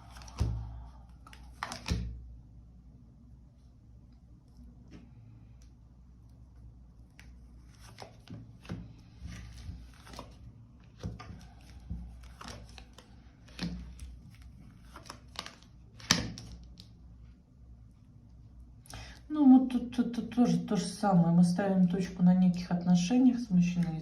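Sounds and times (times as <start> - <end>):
cards being shuffled: 0.0 - 0.6, 1.2 - 2.1, 7.1 - 16.9.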